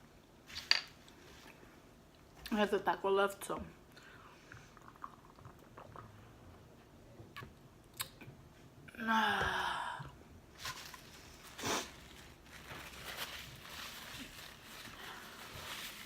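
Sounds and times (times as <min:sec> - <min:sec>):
person sighing: 0:08.9 - 0:10.2.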